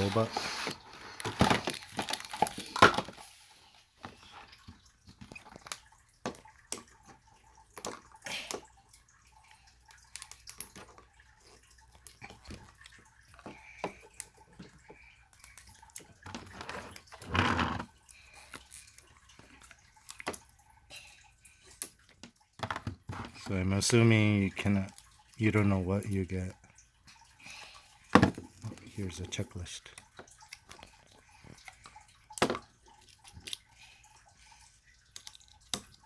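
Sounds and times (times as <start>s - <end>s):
packaging rustling: 0.0s - 3.3s.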